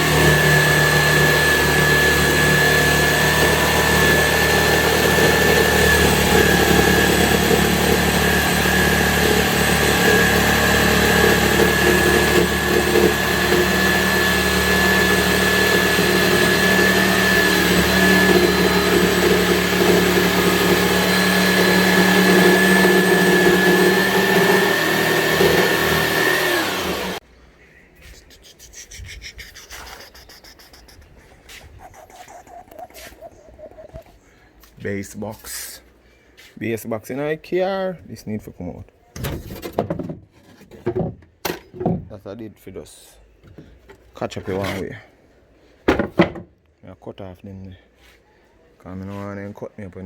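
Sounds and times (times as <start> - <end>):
electric router whining: 0.0 - 27.2.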